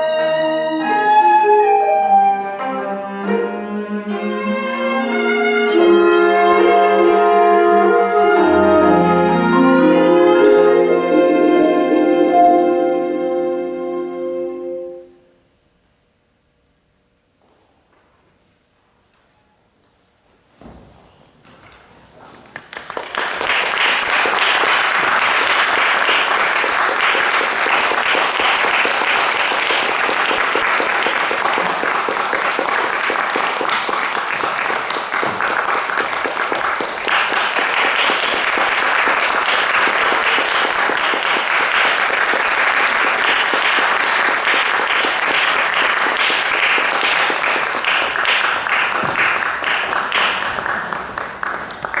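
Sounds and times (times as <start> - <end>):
audience applauding: 22.5 - 52.0.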